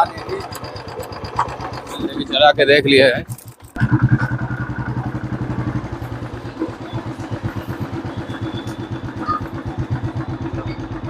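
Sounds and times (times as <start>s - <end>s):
motorcycle engine thumping: 0.0s - 2.4s, 3.2s - 11.0s.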